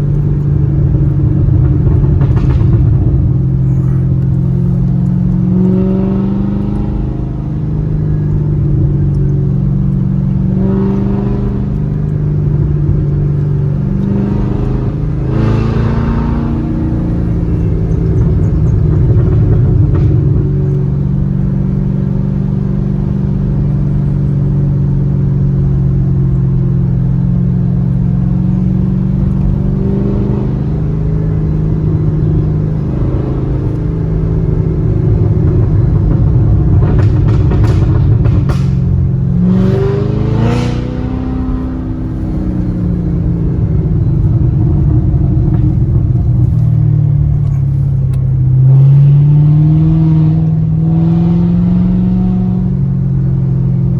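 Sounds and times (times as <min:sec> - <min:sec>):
car engine at steady revs: 0:00.0 - 0:53.9
exhaust crackles: 0:00.0 - 0:53.9
engine rev blip: 0:10.6 - 0:21.0, 0:29.2 - 0:52.6.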